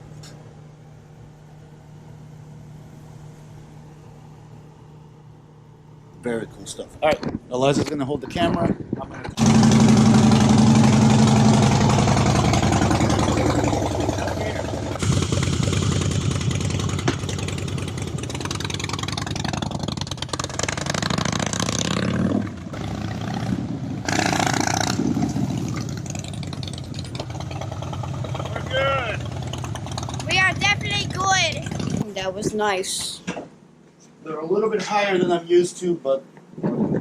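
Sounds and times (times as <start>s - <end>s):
motorcycle engine pulling away: 9.4s - 32.2s.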